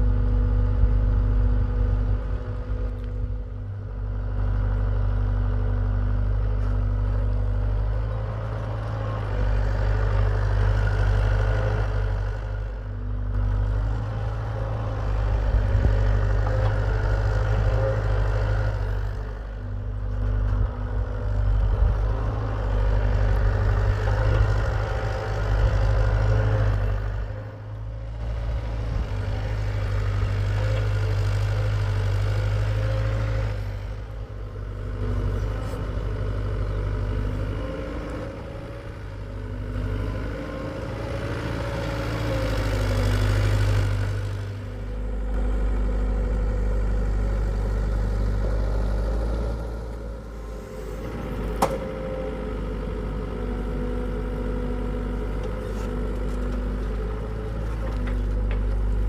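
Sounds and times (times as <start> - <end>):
excavator diesel engine running: 0.0 - 59.0.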